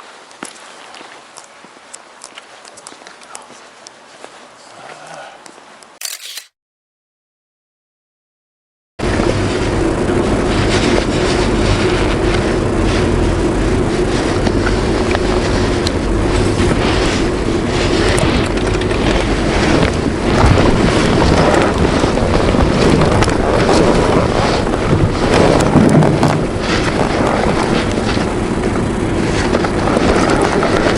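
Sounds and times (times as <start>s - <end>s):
motorcycle engine running: 9.0s - 30.9s
wind rushing over microphone: 9.0s - 30.9s.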